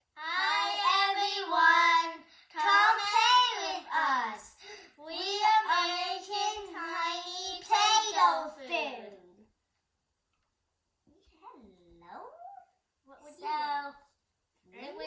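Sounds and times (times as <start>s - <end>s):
child singing: 0.1s - 9.1s.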